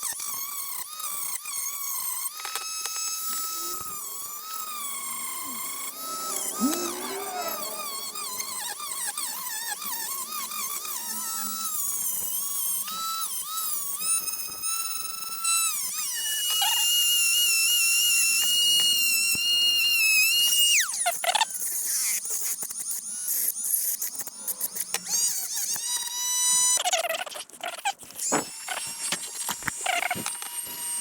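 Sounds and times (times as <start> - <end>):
rotary tool grinding whine: 1.8 - 18.8.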